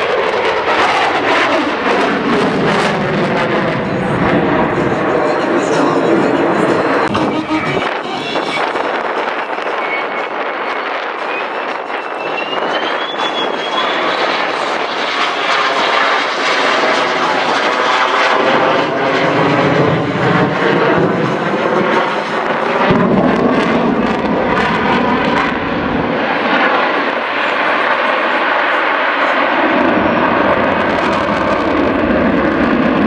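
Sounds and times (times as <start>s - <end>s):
plane flying by: 0.0s - 33.0s
deep rumble: 1.7s - 8.0s, 8.6s - 26.3s.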